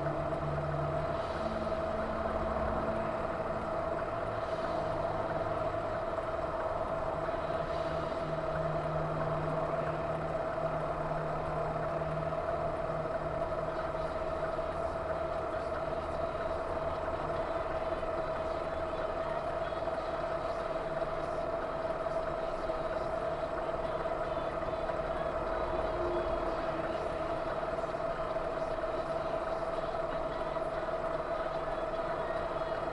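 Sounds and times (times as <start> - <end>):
car engine and road noise: 0.0 - 18.2.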